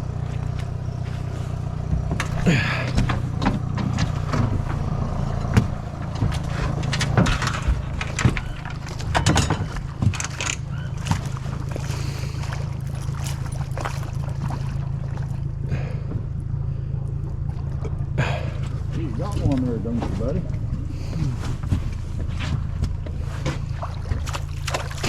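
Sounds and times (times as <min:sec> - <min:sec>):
boat motor running: 0:00.0 - 0:25.0
sharp knocks and clatter: 0:01.8 - 0:11.6.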